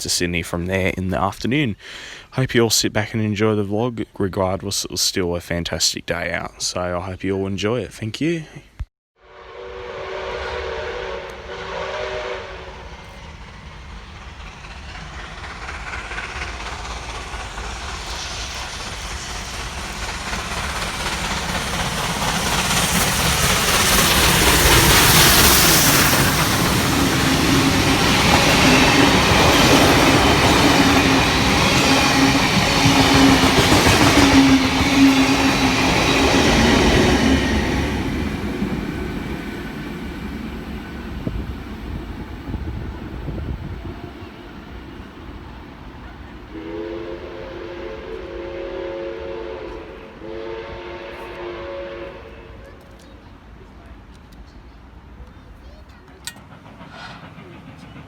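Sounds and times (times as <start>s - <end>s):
train horn: 9.2s - 13.3s, 46.5s - 52.9s
train passing: 9.2s - 58.0s.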